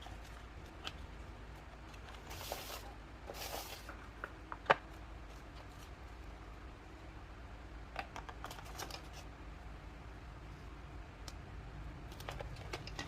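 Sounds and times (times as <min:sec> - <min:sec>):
packaging rustles: 0:00.0 - 0:06.0.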